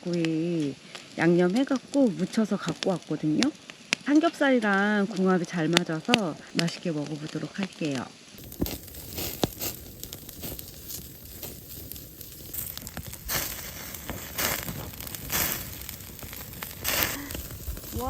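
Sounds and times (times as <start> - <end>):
pork sizzling on a grill: 0.0 - 18.0
wood fire crackling and popping: 0.0 - 18.0.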